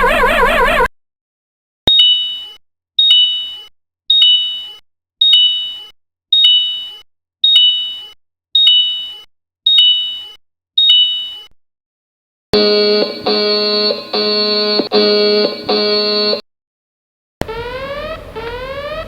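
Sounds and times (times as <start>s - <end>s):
electronic two-note warning chime: 1.9s - 3.6s, 12.6s - 16.4s.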